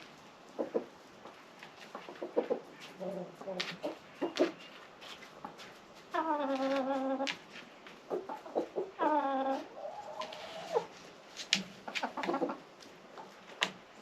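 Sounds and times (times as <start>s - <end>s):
chickens clucking: 0.0s - 13.8s
chicken long drawn-out call: 8.3s - 11.0s.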